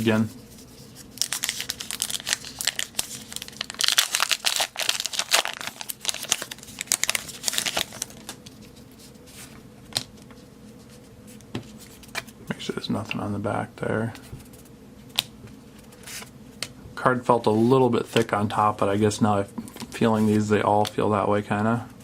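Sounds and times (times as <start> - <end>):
wrapper tearing and crinkling: 1.2 - 8.4.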